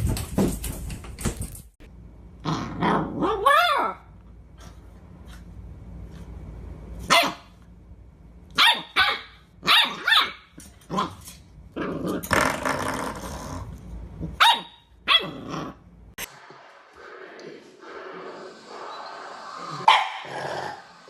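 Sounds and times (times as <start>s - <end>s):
dog barking: 7.1s - 7.5s, 8.6s - 10.4s, 14.4s - 15.3s, 19.9s - 20.3s
dog growling: 11.8s - 13.8s, 19.6s - 21.0s.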